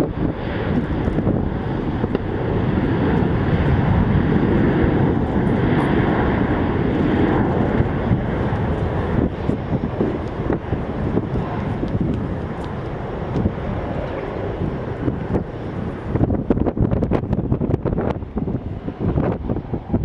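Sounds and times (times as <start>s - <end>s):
jet engines rumbling: 0.0s - 20.0s.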